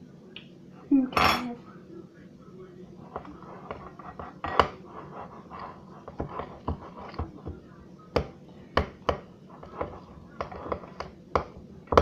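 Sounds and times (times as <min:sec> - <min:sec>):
spoon scraping a bowl: 0:03.0 - 0:07.6, 0:08.9 - 0:12.0.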